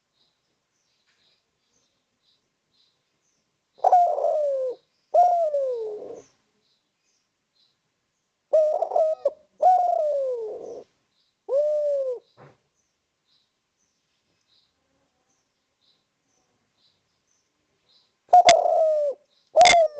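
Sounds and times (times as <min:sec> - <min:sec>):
dove cooing: 0:03.8 - 0:06.4, 0:08.5 - 0:10.9, 0:11.5 - 0:12.3, 0:18.3 - 0:19.9.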